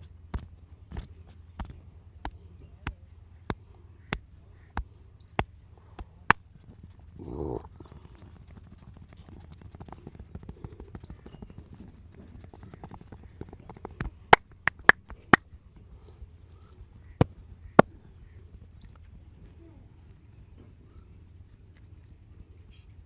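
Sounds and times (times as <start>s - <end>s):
hands rubbing body: 14.3s - 15.0s
loud sharp joint cracks: 14.3s - 15.5s.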